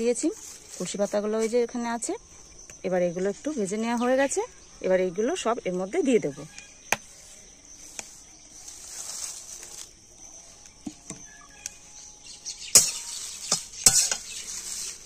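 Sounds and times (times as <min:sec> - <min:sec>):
insects chirring: 0:00.0 - 0:15.0
metal spatula scraping a pan: 0:12.8 - 0:15.0.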